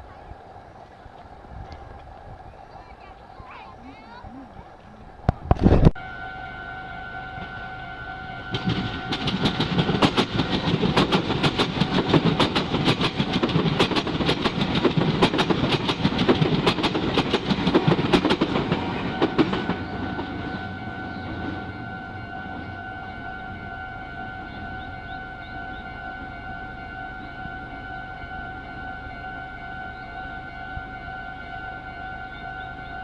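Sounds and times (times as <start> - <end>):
crossing signal two-note tone: 5.9 - 10.6, 19.0 - 33.0
train wheels clacking: 8.3 - 22.7.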